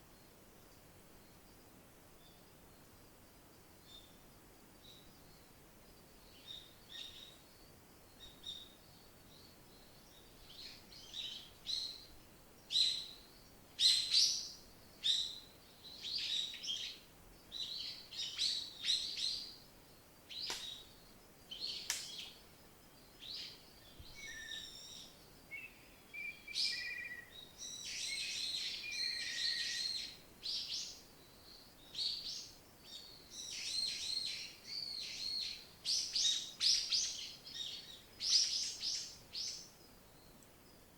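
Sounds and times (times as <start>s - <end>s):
faint background hiss: 0.0s - 40.9s
songbirds chirping and singing: 20.4s - 40.5s.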